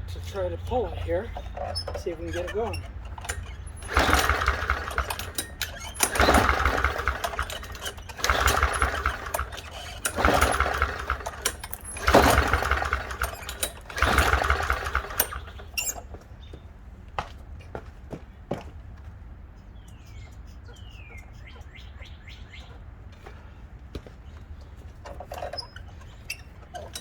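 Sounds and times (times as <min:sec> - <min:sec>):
lawnmower recoil cord pulls: 0:00.0 - 0:16.1, 0:24.6 - 0:27.0
lawnmower engine cranking briefly: 0:01.3 - 0:16.1, 0:25.0 - 0:27.0.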